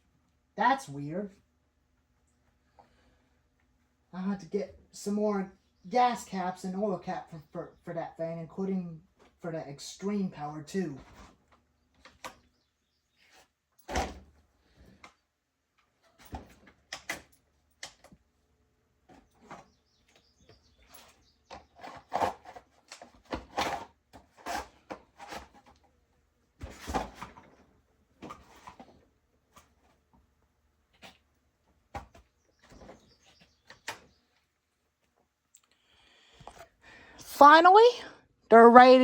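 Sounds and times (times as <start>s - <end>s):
chainsaws being handled: 20.8s - 25.9s.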